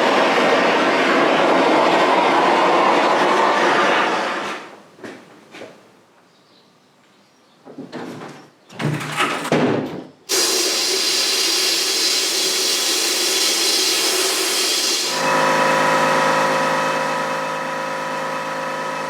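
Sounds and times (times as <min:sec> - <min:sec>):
loud steady hiss of spray: 0:10.3 - 0:16.0.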